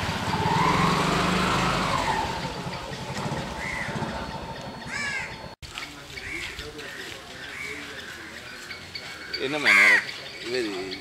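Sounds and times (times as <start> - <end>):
small engine running: 0.0 - 5.5.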